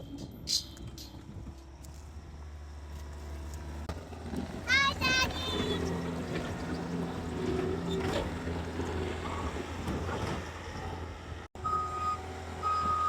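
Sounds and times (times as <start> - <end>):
skid steer engine running: 0.0 - 13.0
reversing alarm beeps: 11.6 - 13.0.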